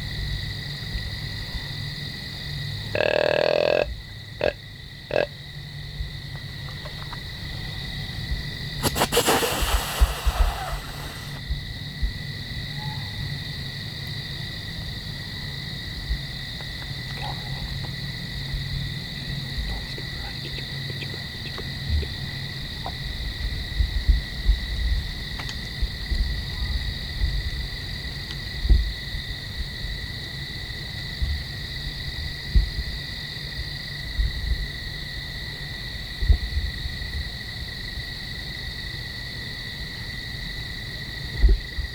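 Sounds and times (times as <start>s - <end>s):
crickets trilling: 0.0s - 41.9s
loud hissing rush: 8.8s - 11.4s.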